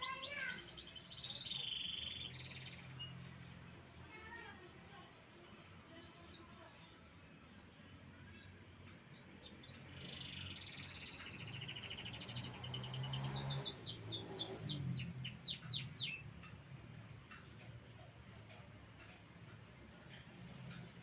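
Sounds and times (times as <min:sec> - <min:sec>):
canary singing: 0:00.0 - 0:04.4, 0:08.0 - 0:19.2.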